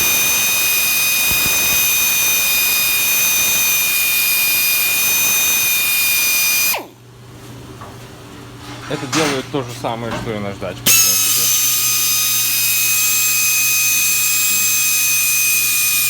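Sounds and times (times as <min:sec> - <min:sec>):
pneumatic drill high whine: 0:00.0 - 0:07.0, 0:10.9 - 0:16.0
brake lathe low hum: 0:00.0 - 0:16.0.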